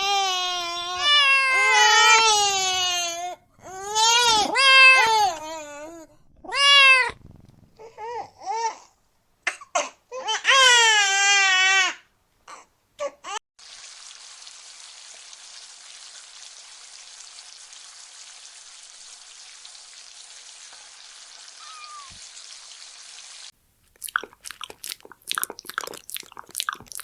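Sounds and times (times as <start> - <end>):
crunchy chewing: 23.8 - 27.0.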